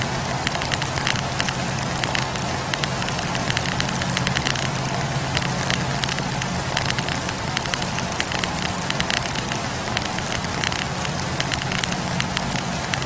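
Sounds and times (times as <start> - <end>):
campfire crackling and popping: 0.0 - 13.0
steady low hum: 0.0 - 13.0.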